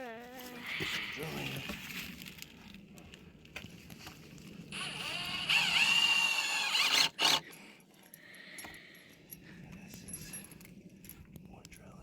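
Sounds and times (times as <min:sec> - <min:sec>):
power drill drilling into wood: 0:04.8 - 0:07.4.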